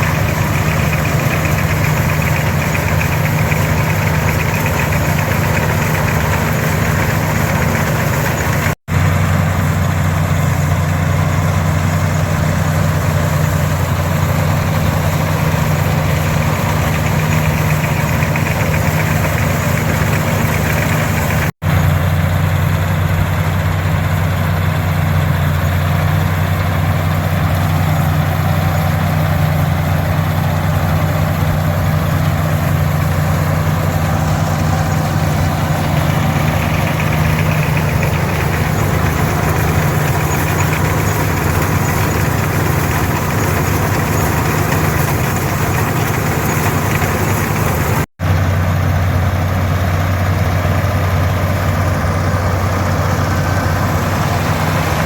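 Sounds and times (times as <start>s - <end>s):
tractor diesel engine under load: 0.0s - 55.0s.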